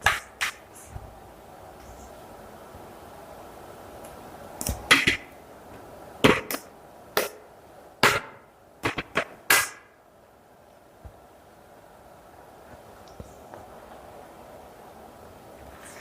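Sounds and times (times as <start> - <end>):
faint steady hum: 0.0 - 16.0
sharp knocks and clacks: 4.6 - 5.3, 8.0 - 9.8.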